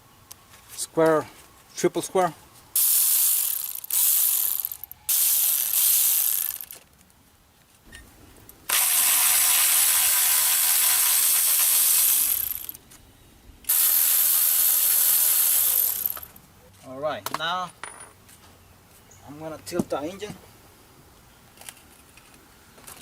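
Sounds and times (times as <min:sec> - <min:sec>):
hand ratchet clicking: 0:02.8 - 0:06.8, 0:08.5 - 0:12.8, 0:13.7 - 0:16.4.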